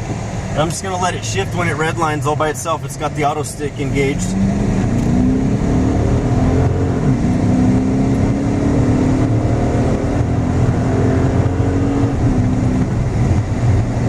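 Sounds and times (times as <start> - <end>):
car engine accelerating hard: 0.0 - 14.0.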